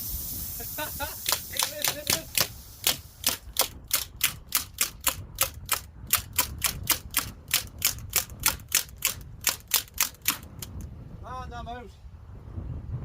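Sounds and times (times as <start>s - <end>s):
bb gun firing rapid shots: 1.2s - 10.8s.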